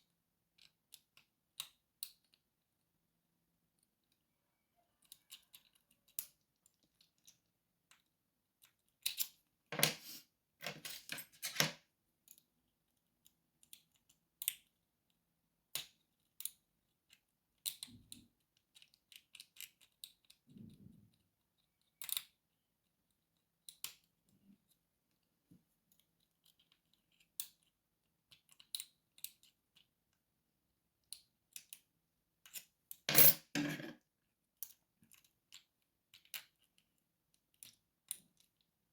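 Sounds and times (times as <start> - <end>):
lock pick clicking and scraping: 10.7 - 11.8.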